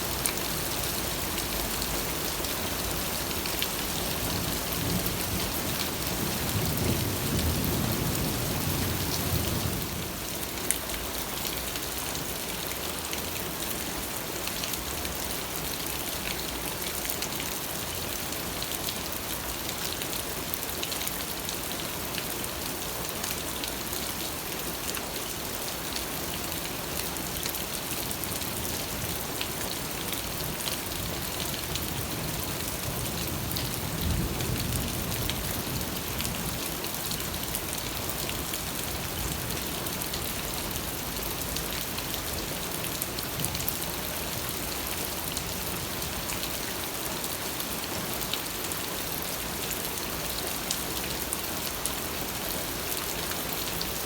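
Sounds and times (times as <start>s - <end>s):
steady rain falling: 0.0s - 54.0s
low rumble of thunder: 4.9s - 10.1s.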